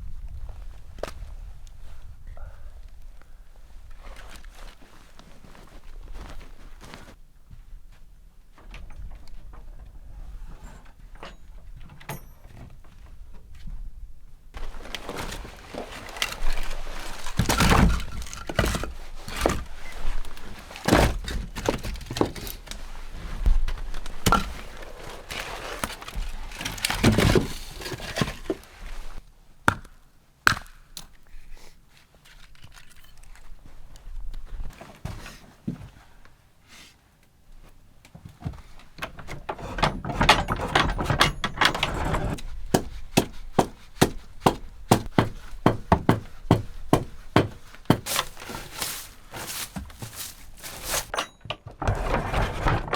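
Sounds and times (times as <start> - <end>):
rustling and handling noise: 3.0 - 11.3, 12.1 - 29.3, 31.3 - 52.9
heavy wooden thuds and knocks: 38.4 - 52.9.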